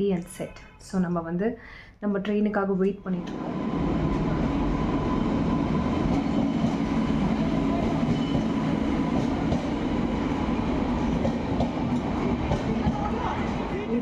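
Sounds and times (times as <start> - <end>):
train rumbling on rails: 3.2 - 14.0.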